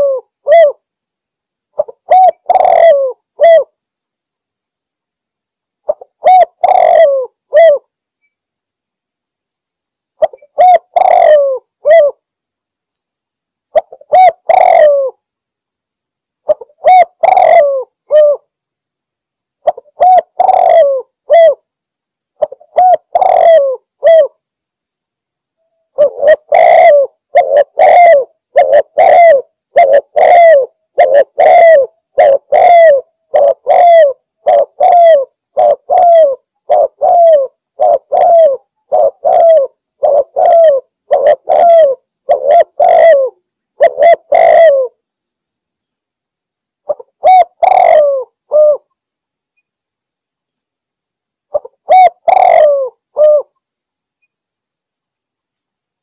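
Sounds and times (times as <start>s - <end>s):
dove cooing: 0.0s - 0.8s, 1.8s - 3.8s, 5.9s - 7.9s, 10.2s - 12.2s, 13.7s - 15.2s, 16.5s - 18.5s, 19.6s - 21.6s, 22.4s - 24.4s, 25.9s - 45.0s, 46.9s - 48.9s, 51.5s - 53.6s.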